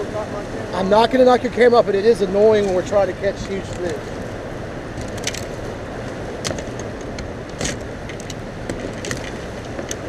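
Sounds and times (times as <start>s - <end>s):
wind and water rushing: 0.0s - 10.0s
sharp clicks and knocks: 6.4s - 10.0s.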